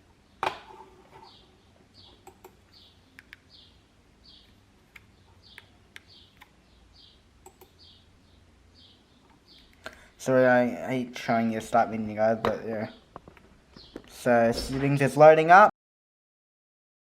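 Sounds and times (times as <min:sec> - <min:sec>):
computer mouse and keyboard clicks: 0:02.2 - 0:03.5, 0:07.4 - 0:07.8.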